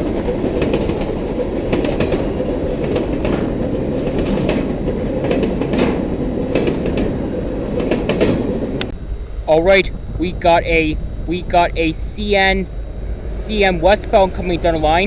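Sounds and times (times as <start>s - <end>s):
train wheels clicking and clanking: 0.0s - 8.8s
freight train rumbling: 0.0s - 15.0s.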